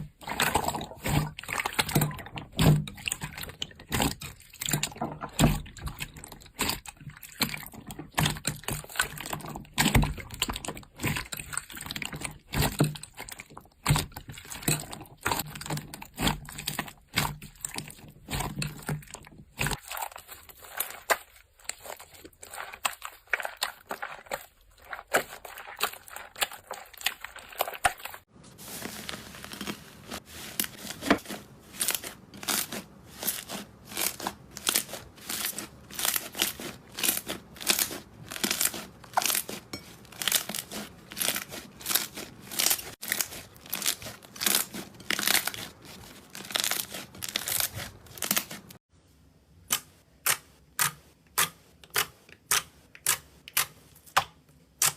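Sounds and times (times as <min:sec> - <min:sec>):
slime crackling and popping: 0:29.1 - 0:48.8.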